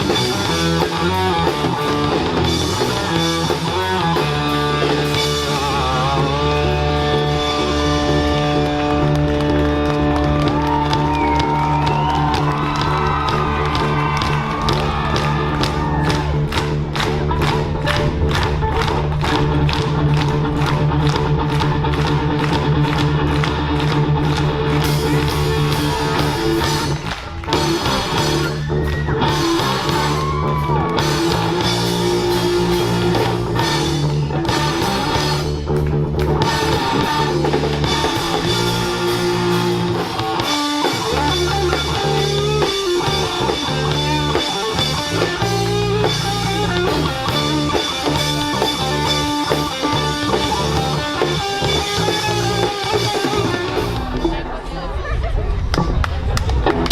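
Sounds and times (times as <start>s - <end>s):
drum kit: 0.0s - 54.5s
bass guitar: 0.0s - 56.9s
electric guitar: 0.0s - 56.9s.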